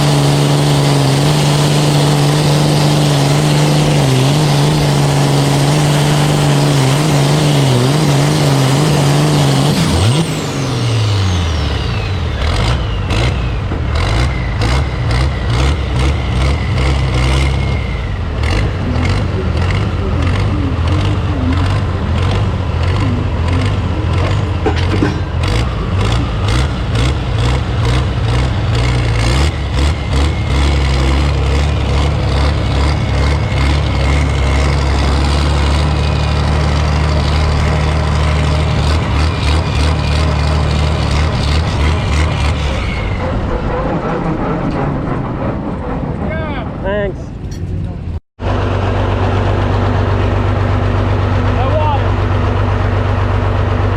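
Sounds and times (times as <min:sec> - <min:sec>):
high whine winding down: 0:00.0 - 0:47.1
tractor engine revving and idling: 0:00.0 - 0:53.9.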